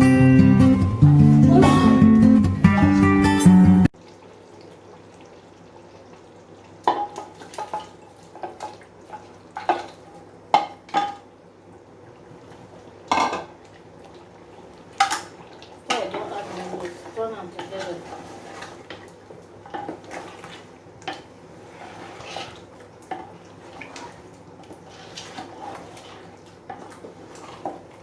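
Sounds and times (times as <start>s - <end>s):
guitar music: 0.0s - 3.9s.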